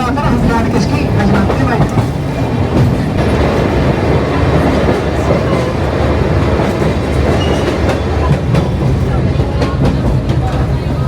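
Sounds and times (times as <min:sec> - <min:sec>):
train rumbling on track: 0:00.0 - 0:11.0.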